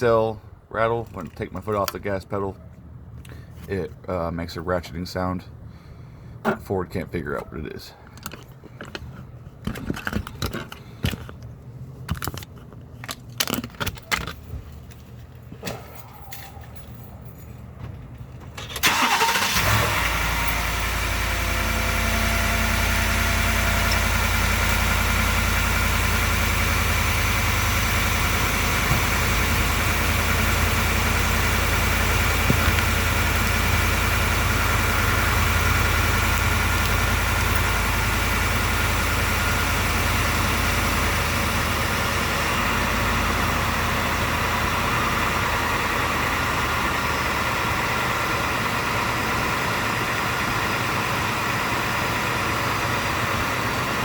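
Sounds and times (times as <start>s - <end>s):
car engine starting and idling: 18.2s - 54.0s.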